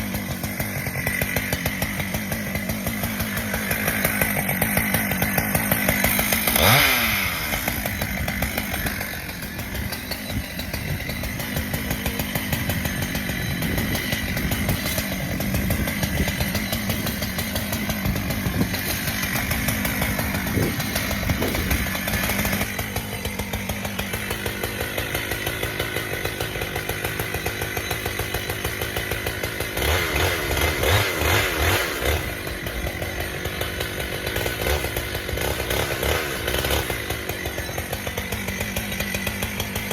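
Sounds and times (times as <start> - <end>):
chainsaw cutting brush: 0.0 - 39.9.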